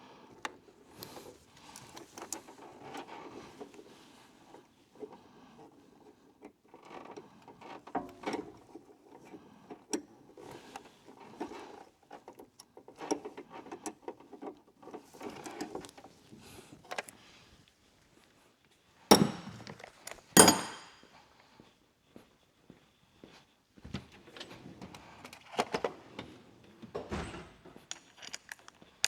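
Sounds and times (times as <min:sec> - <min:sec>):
metal tools clinking on parts: 0:19.1 - 0:21.0, 0:27.9 - 0:29.0.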